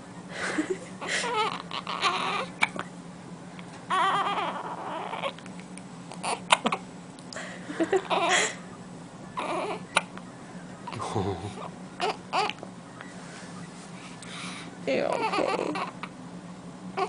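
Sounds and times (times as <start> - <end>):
baby fussy cries: 1.0 - 2.7, 3.9 - 5.4, 8.0 - 8.6, 9.4 - 10.0, 12.0 - 12.6, 15.1 - 16.1.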